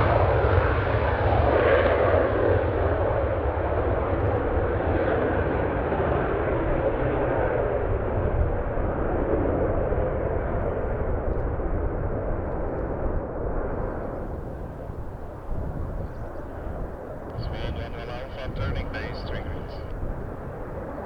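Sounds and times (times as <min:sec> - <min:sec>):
jet engine roar: 0:13.7 - 0:21.0.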